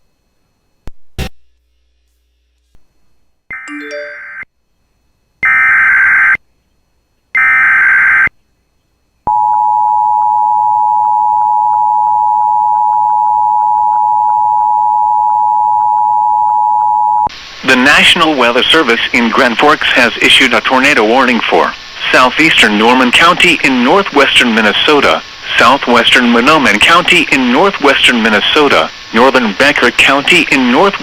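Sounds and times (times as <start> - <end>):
two-tone alert signal: 3.5 - 4.4.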